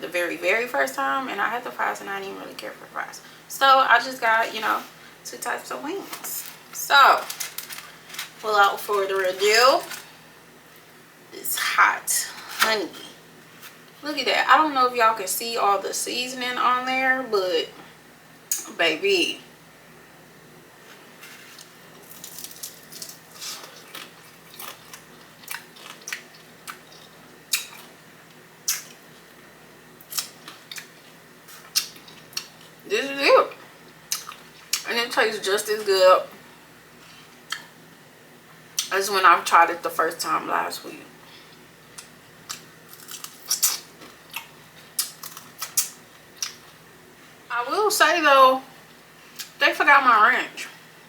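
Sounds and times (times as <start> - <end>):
crunchy chewing: 21.2 - 28.0, 41.5 - 46.8.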